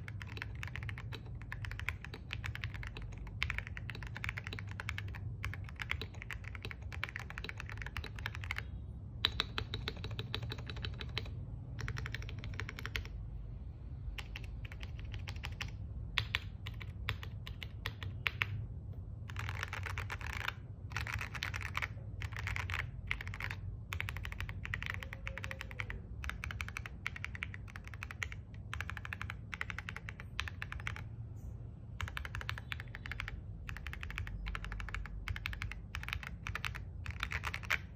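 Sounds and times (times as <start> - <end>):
mechanical keyboard typing: 0.0 - 13.2, 14.1 - 18.6, 19.2 - 31.1, 31.9 - 37.9.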